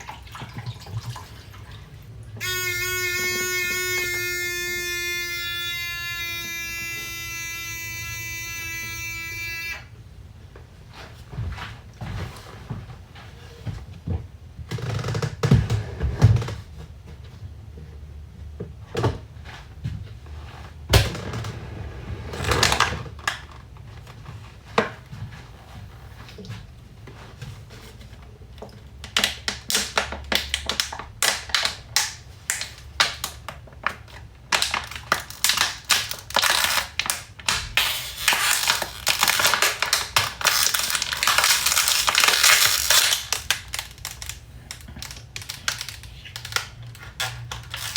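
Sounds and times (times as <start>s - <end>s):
plastic bottles crinkling: 29.1s - 47.9s.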